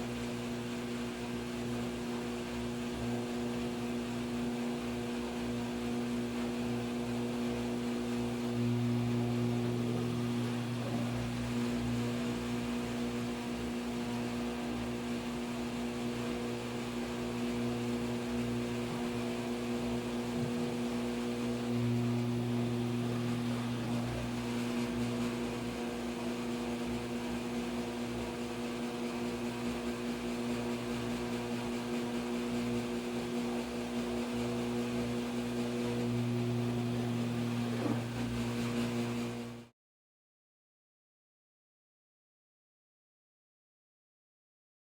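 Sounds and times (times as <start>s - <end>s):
washing machine humming: 0.0s - 39.7s.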